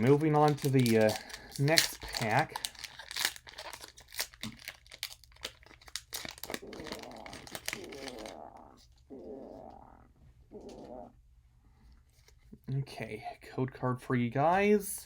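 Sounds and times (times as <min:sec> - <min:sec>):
foil pack crinkling and tearing: 0:00.0 - 0:08.4.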